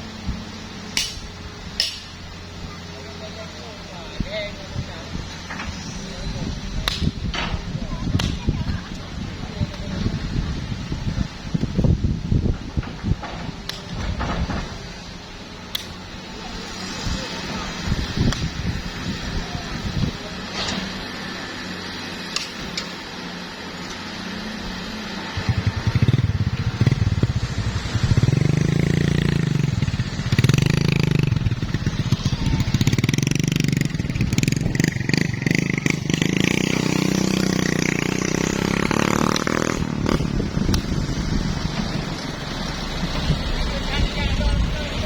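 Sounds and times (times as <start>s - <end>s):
diesel engine revving: 0.0s - 45.0s.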